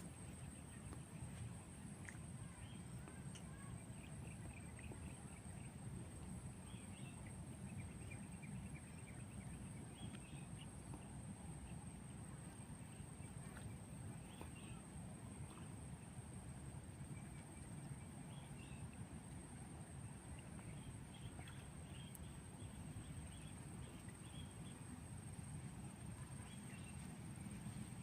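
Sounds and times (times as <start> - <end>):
low rumble of wind: 0.0 - 28.0.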